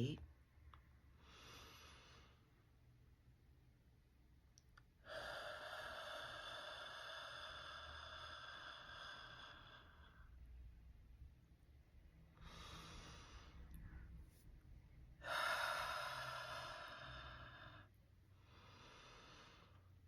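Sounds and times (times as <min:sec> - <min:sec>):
person breathing slowly: 0:01.1 - 0:02.5, 0:05.0 - 0:10.6, 0:12.2 - 0:14.4, 0:15.1 - 0:20.0.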